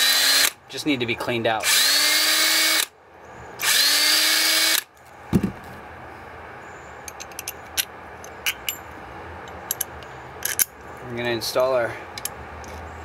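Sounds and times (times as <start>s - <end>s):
electric drill drilling metal: 3.6s - 4.8s
thud: 5.3s - 5.8s
light metal clicks: 7.1s - 12.9s.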